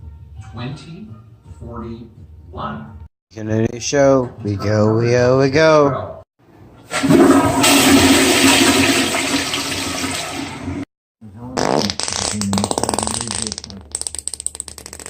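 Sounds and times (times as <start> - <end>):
fart sound effect: 11.5 - 15.0.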